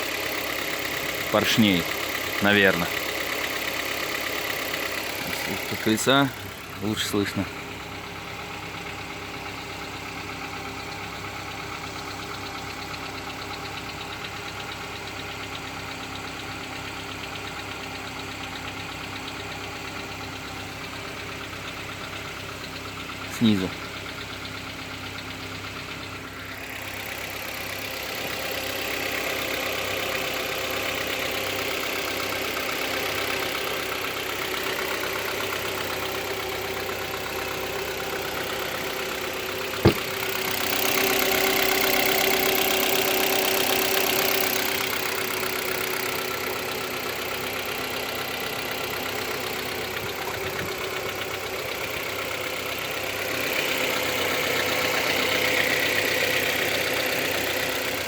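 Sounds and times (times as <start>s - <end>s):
car engine idling: 0.0s - 58.0s
light ticking knock: 39.8s - 40.3s.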